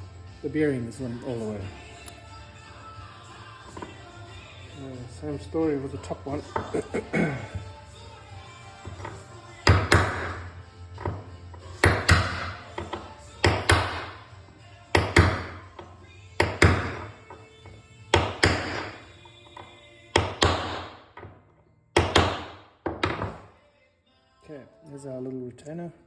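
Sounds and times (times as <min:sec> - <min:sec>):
hammer tapping metal bearing: 0:09.0 - 0:11.2, 0:11.8 - 0:14.2, 0:15.0 - 0:17.4, 0:18.2 - 0:19.0, 0:19.6 - 0:21.4, 0:22.0 - 0:23.4.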